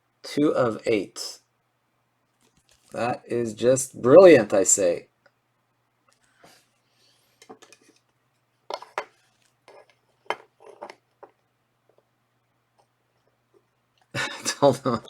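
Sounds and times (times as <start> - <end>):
cards rustling: 2.4 - 3.0.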